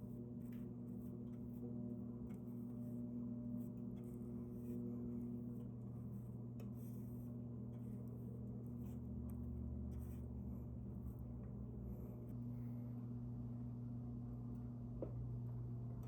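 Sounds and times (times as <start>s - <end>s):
light scratching strokes: 9.8s - 10.7s.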